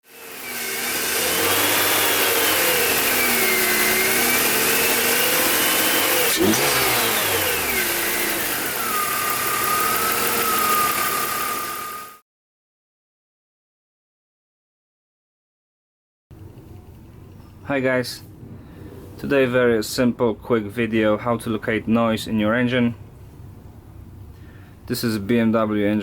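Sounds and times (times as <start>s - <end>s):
car engine running: 0.1s - 12.1s
alternator whistling whine: 0.3s - 12.2s.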